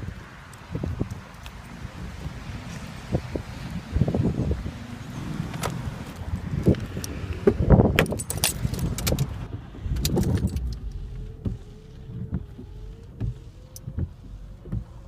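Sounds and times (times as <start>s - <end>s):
keys jangling: 8.0s - 9.3s, 10.0s - 10.8s
faint steady hum rising in pitch: 9.5s - 14.0s.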